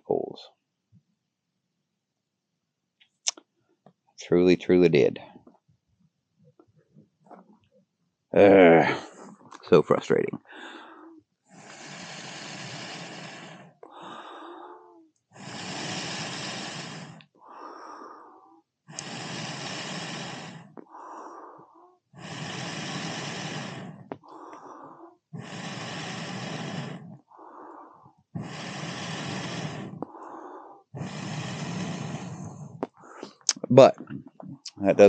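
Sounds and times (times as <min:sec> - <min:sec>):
man gasping in-breaths: 0:10.5 - 0:11.1, 0:11.8 - 0:33.5
man blowing on fire: 0:11.5 - 0:14.5, 0:15.3 - 0:17.8, 0:18.9 - 0:21.3, 0:22.1 - 0:34.5.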